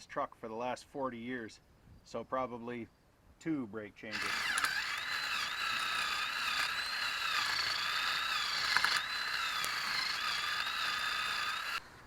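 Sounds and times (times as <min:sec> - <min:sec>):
wire brush power tool whining: 0:04.1 - 0:11.9.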